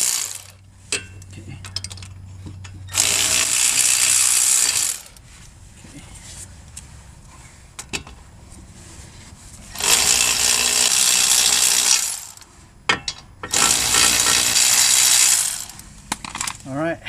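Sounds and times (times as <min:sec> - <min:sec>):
air-powered wrench running: 0:00.0 - 0:00.6, 0:02.9 - 0:05.2, 0:09.7 - 0:12.5, 0:13.4 - 0:16.0.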